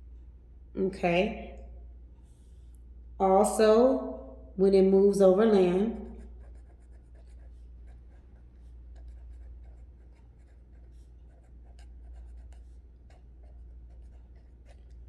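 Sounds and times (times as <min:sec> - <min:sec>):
steady low hum: 0:00.0 - 0:15.0
pen scratching handwriting: 0:05.9 - 0:15.0.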